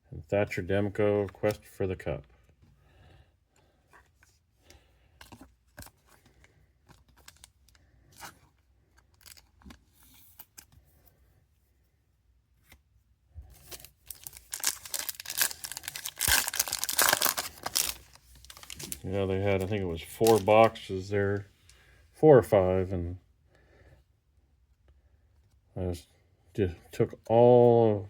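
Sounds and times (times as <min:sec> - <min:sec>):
cards handled with clicks and rustles: 0:01.2 - 0:02.8, 0:03.5 - 0:11.2, 0:12.6 - 0:21.8
foil wrapper tearing and crinkling: 0:13.6 - 0:19.0, 0:20.2 - 0:20.8.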